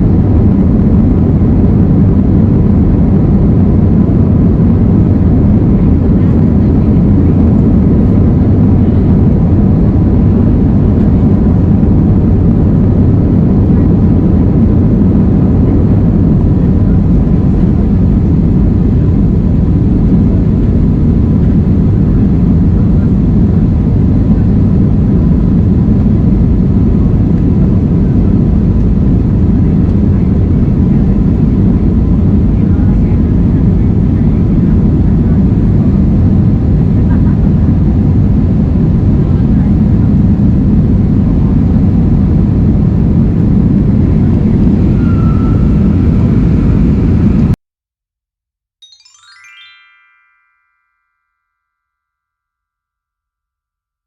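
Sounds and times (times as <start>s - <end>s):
faint steady whine: 0.0s - 47.6s
jet engines rumbling in cabin: 0.0s - 47.6s.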